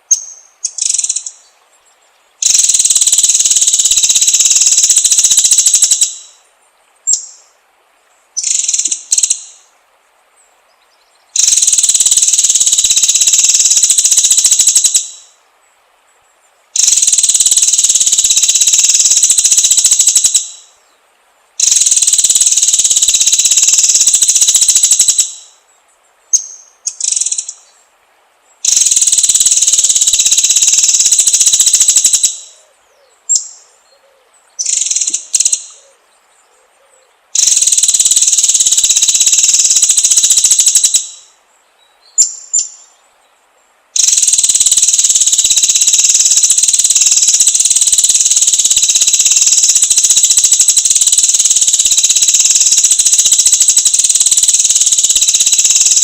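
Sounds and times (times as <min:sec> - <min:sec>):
bird chirps: 0:00.0 - 0:07.6, 0:08.4 - 0:09.7, 0:10.7 - 0:15.4, 0:16.8 - 0:21.0, 0:21.6 - 0:27.8, 0:28.6 - 0:43.4, 0:44.0 - 0:56.0
bird buzzing trill: 0:02.4 - 0:06.4, 0:08.4 - 0:09.7, 0:11.3 - 0:15.4, 0:16.8 - 0:20.7, 0:21.6 - 0:25.6, 0:28.6 - 0:32.6, 0:37.4 - 0:41.4, 0:44.0 - 0:56.0.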